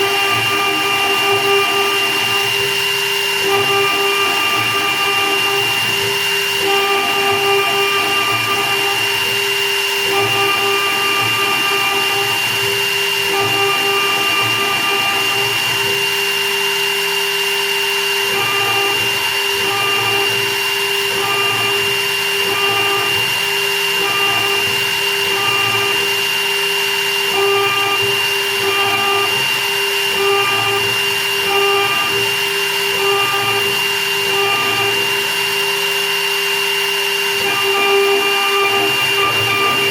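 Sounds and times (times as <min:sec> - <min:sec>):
milling machine whine and hum: 0:00.0 - 0:39.9
pulsing motor tones: 0:00.0 - 0:39.9.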